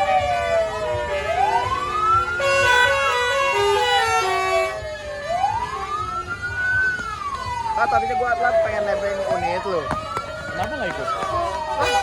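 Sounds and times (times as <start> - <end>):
siren wailing: 0.0 - 12.0
bus multi-tone horn tune: 1.0 - 5.4, 11.7 - 12.0.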